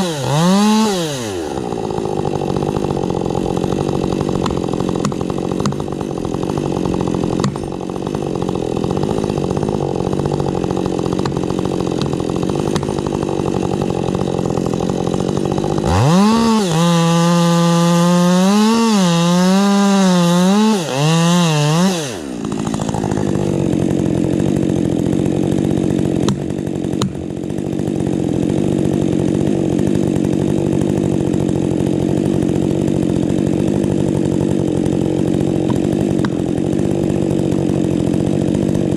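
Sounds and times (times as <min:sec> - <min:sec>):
chainsaw running: 0:00.0 - 0:38.9.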